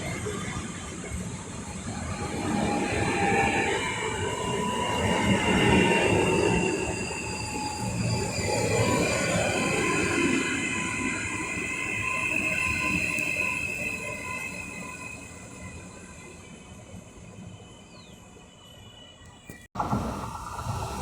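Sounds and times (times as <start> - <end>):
train wheel squeal: 0.0 - 20.2
train rumble on rails: 0.0 - 21.0.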